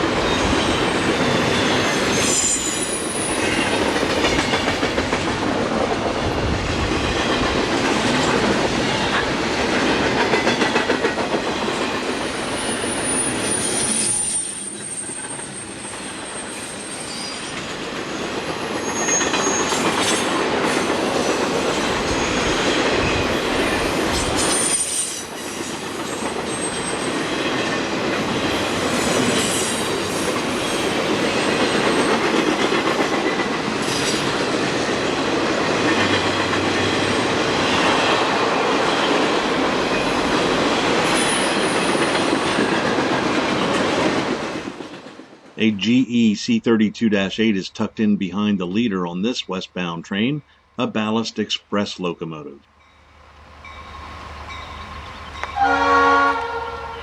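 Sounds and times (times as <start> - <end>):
freight train cars rolling: 0.0 - 45.8, 48.8 - 57.0
high wheel squeals: 0.2 - 3.7, 11.5 - 20.3, 21.4 - 27.8, 52.8 - 57.0.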